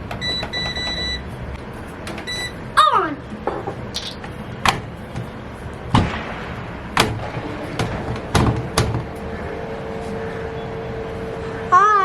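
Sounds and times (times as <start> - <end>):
washing machine hum: 0.0 - 12.0
washing machine knocks and thuds: 4.6 - 5.3, 5.9 - 6.4, 7.0 - 9.2.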